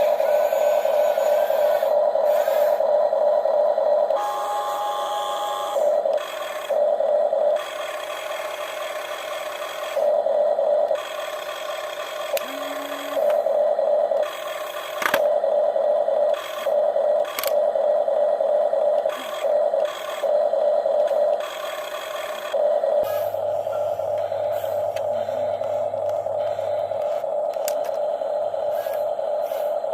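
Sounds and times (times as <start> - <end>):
small electric motors whirring: 0.0 - 2.8, 4.1 - 6.8, 10.9 - 13.5, 14.2 - 15.3, 16.2 - 17.7, 19.0 - 20.4, 21.0 - 28.0, 28.6 - 29.8.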